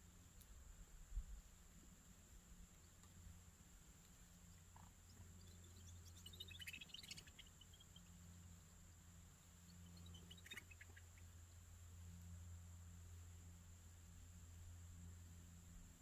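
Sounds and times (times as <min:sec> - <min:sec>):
faint bird chirps: 0:04.2 - 0:12.2.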